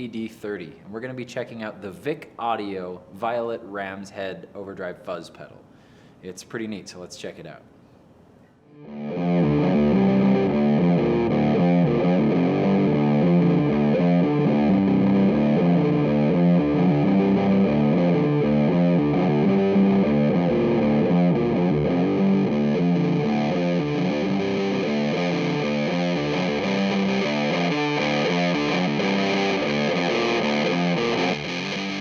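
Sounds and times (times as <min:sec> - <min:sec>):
fuzzed electric guitar riff: 0:08.7 - 0:32.0.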